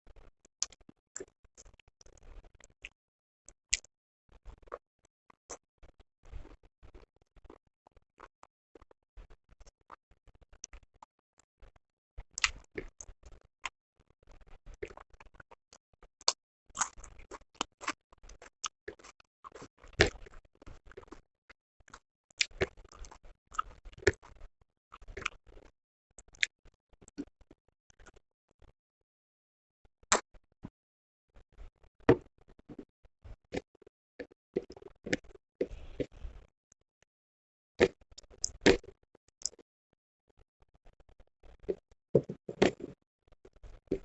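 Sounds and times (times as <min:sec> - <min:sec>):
chewing: 0:05.9 - 0:07.6, 0:14.3 - 0:15.2, 0:16.7 - 0:21.2, 0:21.9 - 0:28.2, 0:32.1 - 0:36.4.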